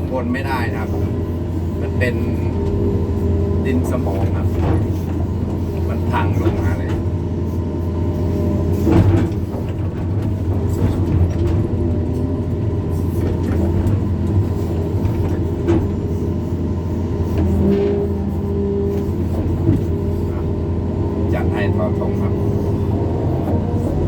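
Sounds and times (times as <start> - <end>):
excavator diesel engine running: 0.0 - 24.0.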